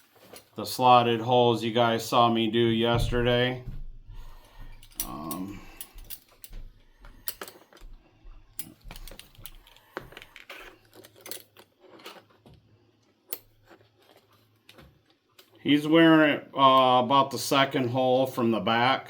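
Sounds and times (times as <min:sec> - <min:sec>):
belt buckles clicking and rustling: 0:00.0 - 0:00.6, 0:04.4 - 0:12.5.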